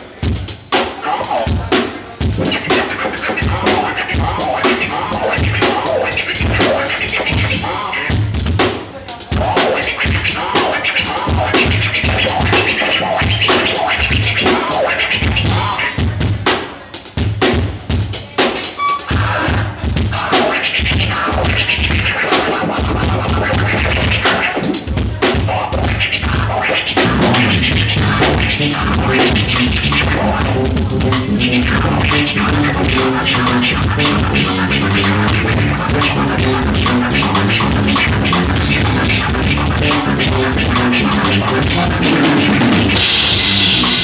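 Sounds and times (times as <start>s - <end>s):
drum kit beat: 0.0s - 44.0s
live band music: 0.0s - 44.0s
heavy bass line: 1.1s - 8.6s, 9.4s - 16.4s, 25.4s - 44.0s.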